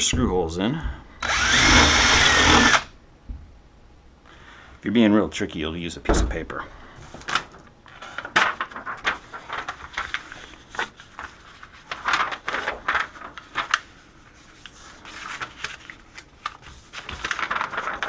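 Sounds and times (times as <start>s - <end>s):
paper rustling and crinkling: 7.0s - 18.0s.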